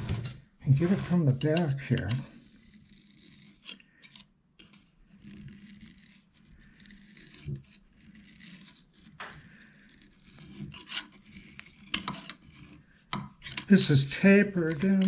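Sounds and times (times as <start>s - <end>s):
metal scraping strokes: 0.0s - 4.2s.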